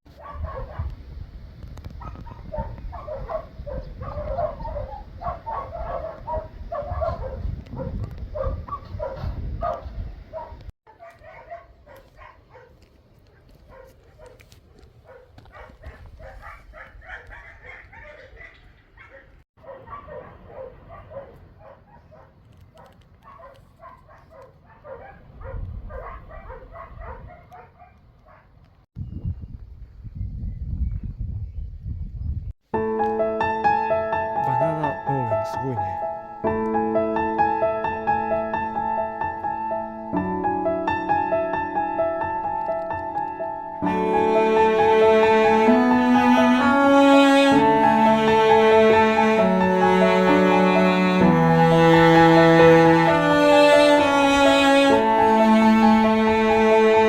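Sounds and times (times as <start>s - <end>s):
wind rumbling on microphone: 0.1s - 10.7s, 15.7s - 18.0s, 25.2s - 27.5s, 29.0s - 32.5s.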